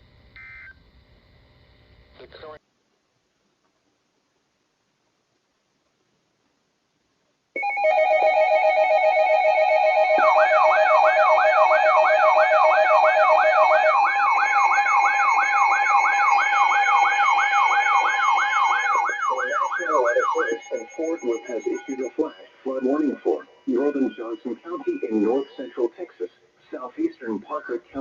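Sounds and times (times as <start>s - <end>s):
electronic alarm tones: 0.4s - 0.7s, 7.6s - 26.3s.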